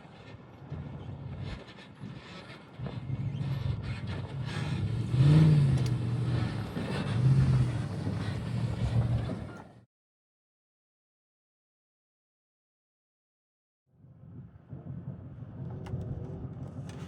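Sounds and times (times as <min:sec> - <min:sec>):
off-road vehicle engine revving: 0:01.4 - 0:09.7.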